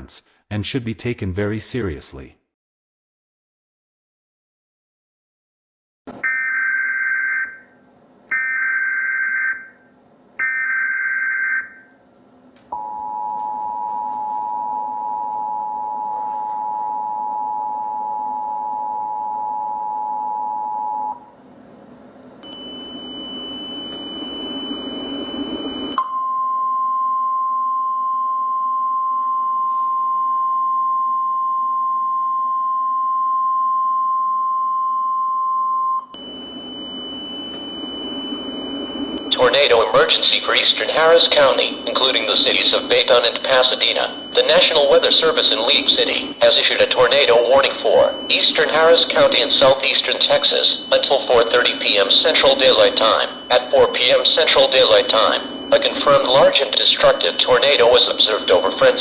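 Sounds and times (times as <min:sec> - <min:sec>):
steady warning tone: 0:12.7 - 0:21.4, 0:22.4 - 0:59.0
two-tone attention signal: 0:33.4 - 0:59.0.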